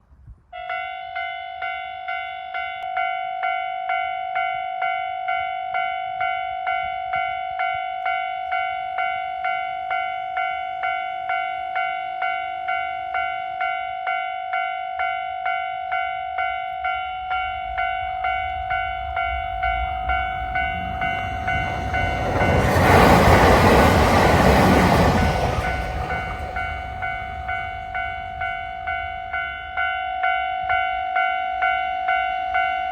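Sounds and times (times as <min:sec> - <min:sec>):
level crossing bell clanging: 0:15.6 - 0:32.9
train rumble: 0:16.7 - 0:32.9.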